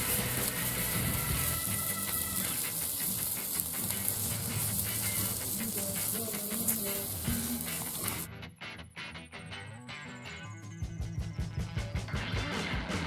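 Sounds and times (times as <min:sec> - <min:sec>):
food sizzling on a grill: 0:00.0 - 0:08.3.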